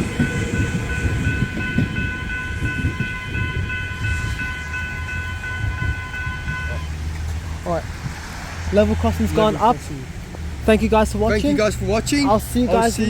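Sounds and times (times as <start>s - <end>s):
level crossing bells ringing: 0.0s - 7.1s
passing electric train rumble: 0.0s - 13.0s.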